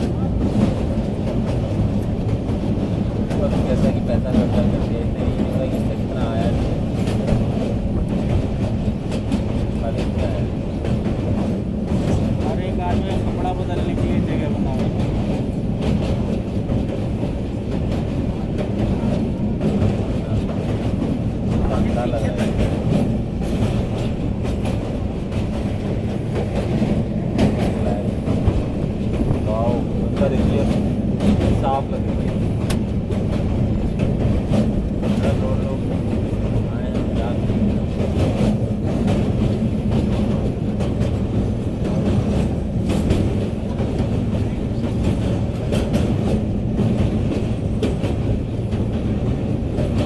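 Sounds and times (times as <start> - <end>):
train wheels rumbling on rails: 0.0 - 50.0.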